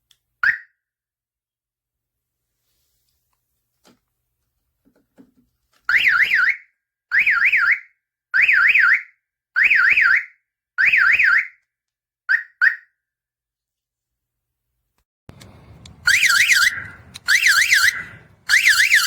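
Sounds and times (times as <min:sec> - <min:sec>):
car alarm chirps: 0:05.9 - 0:11.6, 0:15.3 - 0:19.0
car alarm siren warbling: 0:15.3 - 0:19.0.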